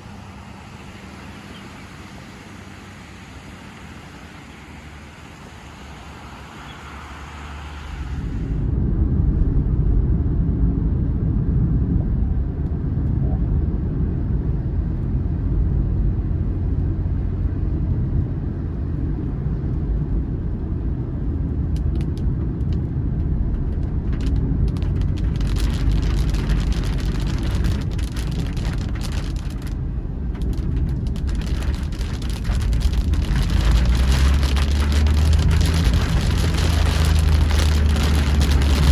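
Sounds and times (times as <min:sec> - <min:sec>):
rain: 0:00.0 - 0:08.7, 0:14.9 - 0:38.9
loud low rumble: 0:07.9 - 0:38.9.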